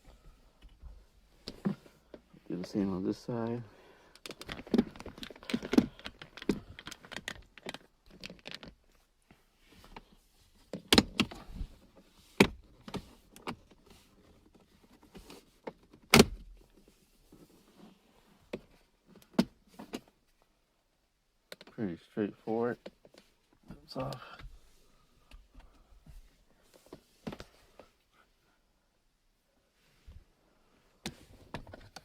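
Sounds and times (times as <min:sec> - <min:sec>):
plastic trim rustling: 0:04.3 - 0:08.7.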